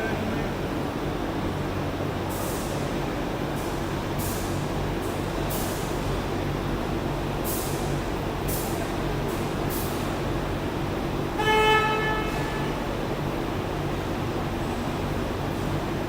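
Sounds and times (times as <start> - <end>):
machinery humming: 0.0 - 16.0.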